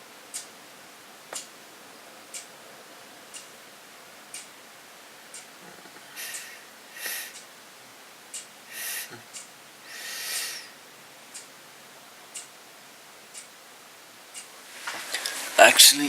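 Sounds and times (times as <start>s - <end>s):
clock-like ticking: 0.3s - 0.5s, 3.3s - 3.6s, 4.3s - 4.5s, 6.2s - 7.5s, 8.3s - 11.5s, 12.3s - 12.5s, 13.3s - 13.6s
short hissing whooshes: 6.1s - 7.4s, 8.7s - 9.2s, 9.8s - 10.8s.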